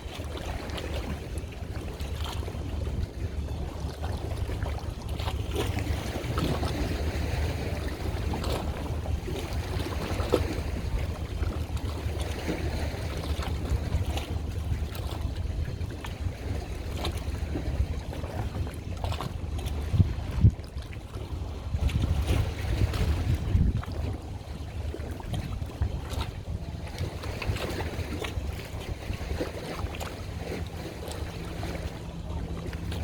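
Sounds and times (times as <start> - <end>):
water splashing and lapping: 0.0 - 33.0
wind buffeting microphone: 0.0 - 33.0.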